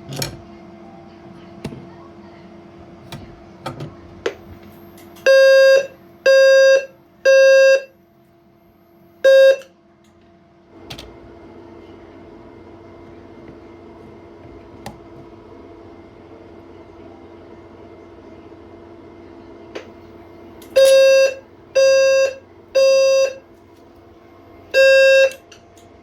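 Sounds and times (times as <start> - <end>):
low-frequency fire alarm tones: 5.2 - 8.0, 9.2 - 9.7, 20.7 - 23.4, 24.7 - 25.6.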